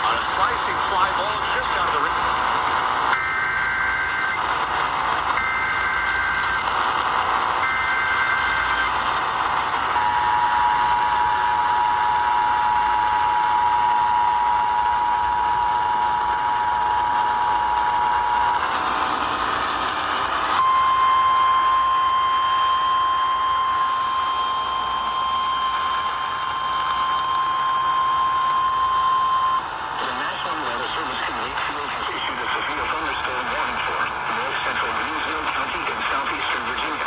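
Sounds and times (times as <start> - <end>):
radio static hiss: 0.0 - 5.4, 29.9 - 37.0
two-tone attention signal: 3.1 - 4.4, 5.4 - 6.6, 7.6 - 8.9, 20.6 - 29.6
single-tone warning alarm: 3.1 - 4.5, 5.3 - 6.8, 7.6 - 9.1, 9.8 - 16.9, 20.6 - 29.7.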